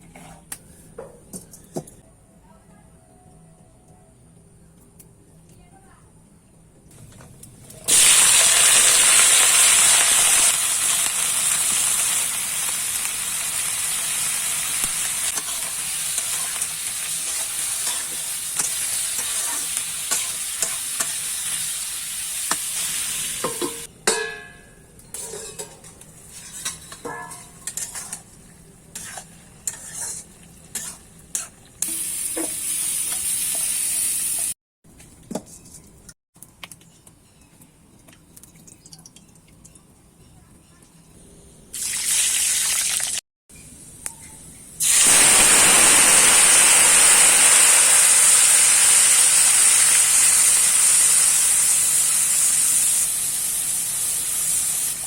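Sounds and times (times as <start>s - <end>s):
food sizzling in hot oil: 7.8s - 23.9s, 27.6s - 34.6s, 41.8s - 43.2s, 44.8s - 55.0s.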